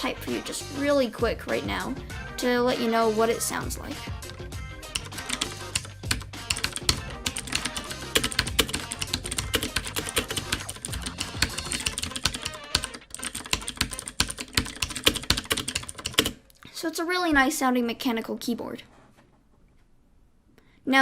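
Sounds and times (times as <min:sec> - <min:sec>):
clicky mechanical keyboard typing: 0:05.0 - 0:16.4.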